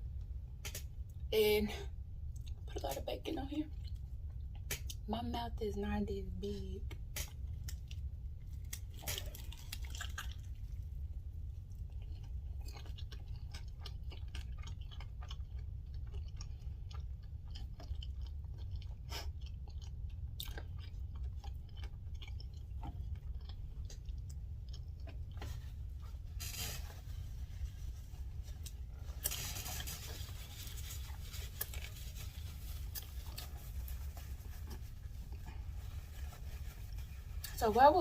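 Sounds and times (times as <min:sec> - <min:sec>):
low background hum: 0:00.0 - 0:38.0
wet mouth clicks and smacks: 0:00.6 - 0:01.2, 0:03.8 - 0:05.0, 0:06.9 - 0:10.5
person chewing a burger: 0:02.0 - 0:02.7, 0:03.7 - 0:05.0, 0:06.9 - 0:37.6.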